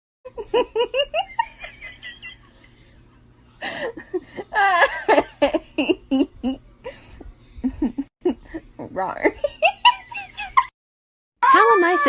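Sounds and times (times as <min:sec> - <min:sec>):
person laughing: 0:03.6 - 0:08.6.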